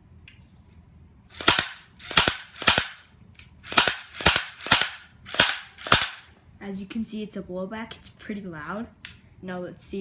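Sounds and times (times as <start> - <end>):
airsoft pistol shots: 1.3 - 3.0, 3.7 - 6.3.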